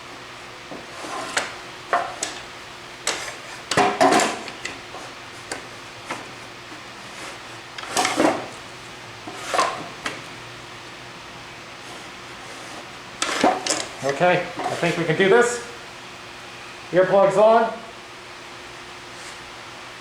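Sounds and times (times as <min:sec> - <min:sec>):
wood scraping on table: 0:00.7 - 0:02.1, 0:12.5 - 0:13.9.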